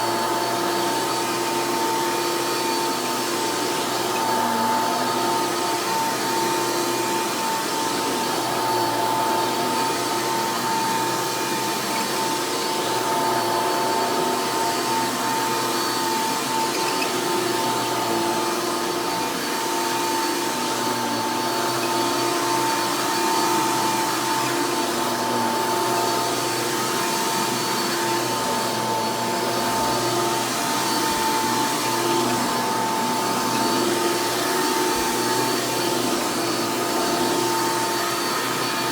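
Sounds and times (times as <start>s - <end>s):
vacuum cleaner running with whine: 0.0s - 38.9s.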